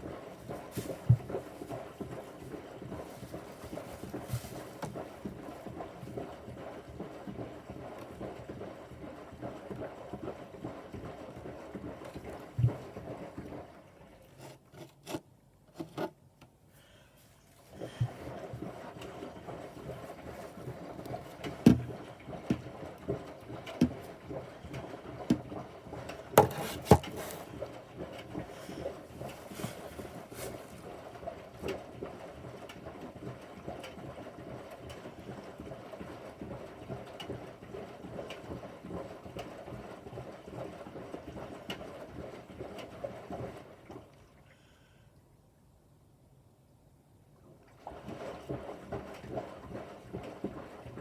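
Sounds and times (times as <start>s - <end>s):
washing machine water sloshing: 0.0s - 15.0s, 17.4s - 44.4s, 47.5s - 51.0s
sharp knocks: 21.6s - 21.9s.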